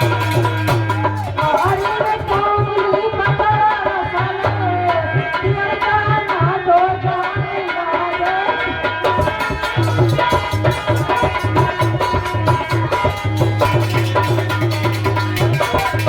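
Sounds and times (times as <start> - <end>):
hand drum beating: 0.0 - 4.6, 9.0 - 16.0.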